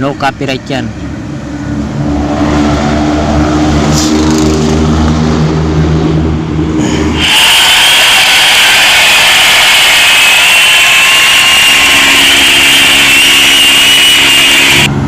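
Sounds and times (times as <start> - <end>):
low hum tones: 5.3 - 15.0
rushing noise: 6.6 - 15.0
mechanical whine: 7.1 - 15.0.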